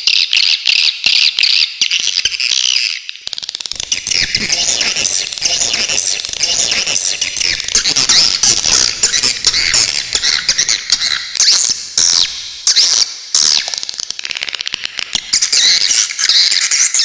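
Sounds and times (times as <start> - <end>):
swiftlets chirping and twittering: 3.7 - 17.0.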